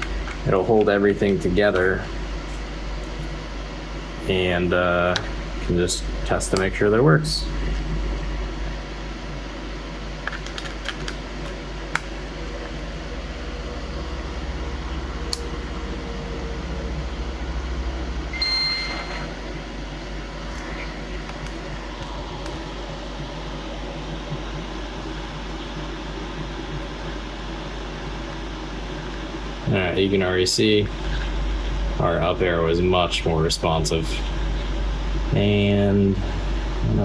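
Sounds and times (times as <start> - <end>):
background hum: 0.0 - 37.0
high electronic beep: 18.3 - 19.3.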